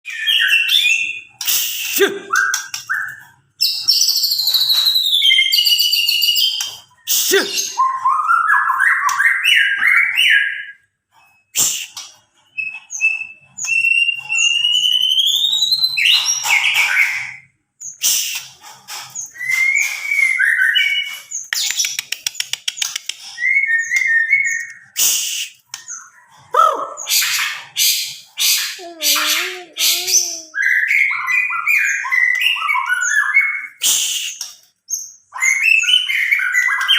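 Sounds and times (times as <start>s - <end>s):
bird singing varied whistles and trills: 0.1s - 36.9s.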